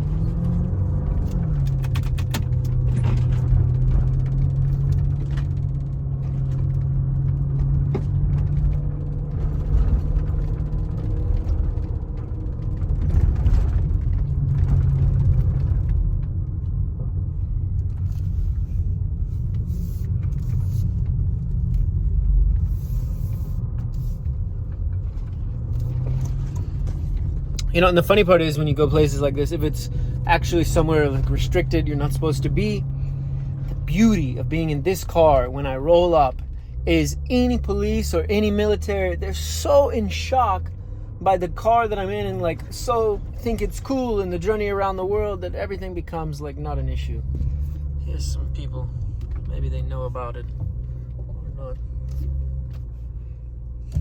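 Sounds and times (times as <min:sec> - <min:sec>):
car engine low rumble: 0:00.0 - 0:54.0.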